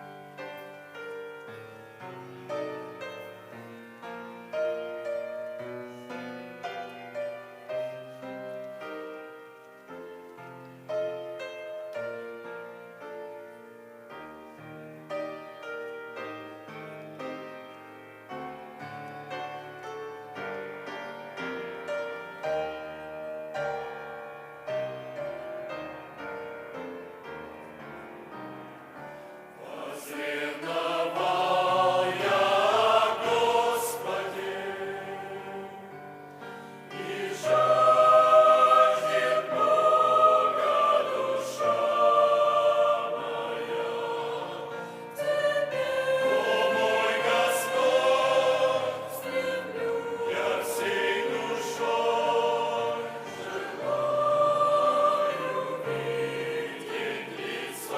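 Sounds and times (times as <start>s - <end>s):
slow piano: 0.0s - 57.9s
choir singing: 28.9s - 57.9s.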